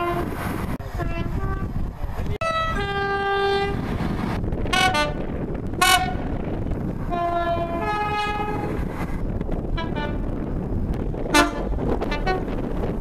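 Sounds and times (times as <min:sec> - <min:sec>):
train horn: 0:00.0 - 0:01.8, 0:02.4 - 0:03.9, 0:04.7 - 0:05.2, 0:05.8 - 0:06.3, 0:07.1 - 0:08.8, 0:09.8 - 0:10.2, 0:11.3 - 0:12.5
train rumbling: 0:00.0 - 0:13.0.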